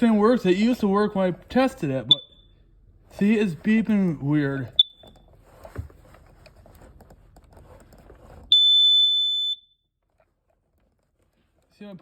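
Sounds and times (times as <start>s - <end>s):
high-pitched alarm beep: 2.1s - 2.5s.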